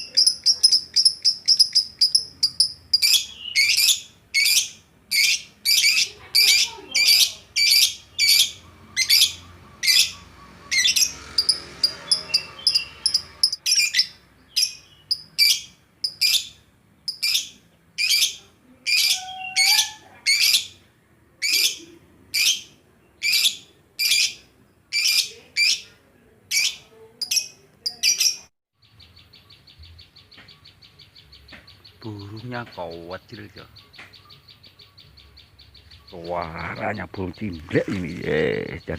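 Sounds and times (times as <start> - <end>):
bird ticking trill: 0.0 - 4.6, 5.2 - 18.2
songbird chirping: 0.0 - 38.9.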